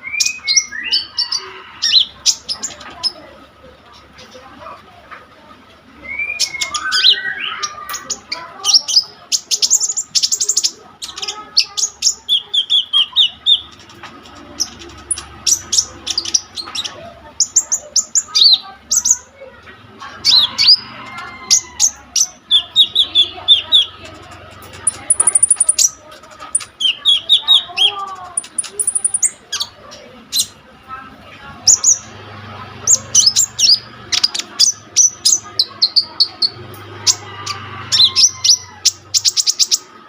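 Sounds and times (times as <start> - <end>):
bird singing chirps and trills: 0.0 - 3.3, 6.0 - 30.6, 31.2 - 40.0.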